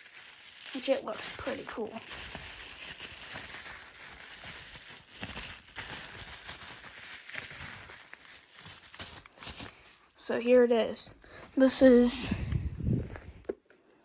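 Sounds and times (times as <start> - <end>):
small clicks and crackles: 0.0 - 9.8
packaging rustling and crinkling: 0.0 - 10.2, 12.0 - 13.8.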